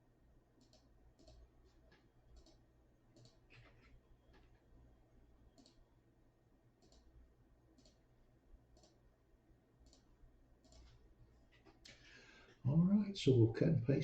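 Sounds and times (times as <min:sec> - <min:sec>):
faint mouse clicks: 0:00.6 - 0:04.6, 0:05.5 - 0:05.9, 0:06.8 - 0:07.1, 0:07.7 - 0:08.0, 0:08.7 - 0:09.0, 0:09.8 - 0:11.0.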